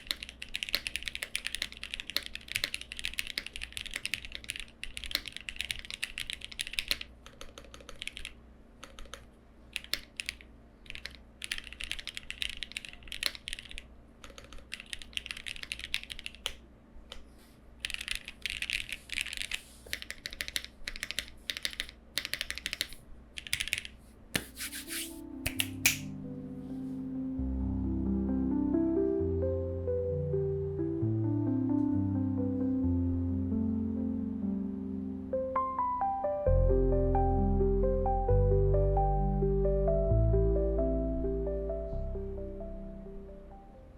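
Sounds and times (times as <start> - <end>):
mechanical keyboard keystroke clacks: 0.0 - 16.6, 17.8 - 23.9.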